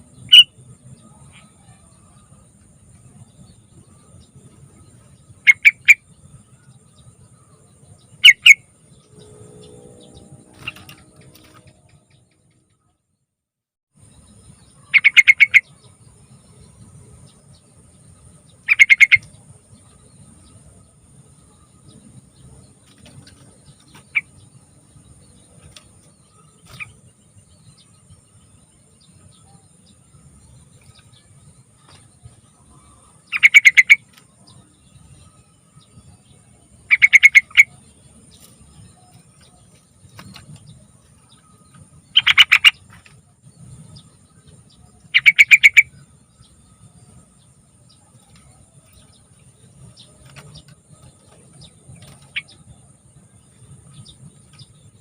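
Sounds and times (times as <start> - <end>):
bird chattering calls: 0.2 - 0.6, 5.4 - 6.0, 8.2 - 8.6, 14.8 - 15.8, 18.6 - 19.4, 32.7 - 34.6, 36.9 - 37.8, 42.1 - 43.2, 45.0 - 46.0.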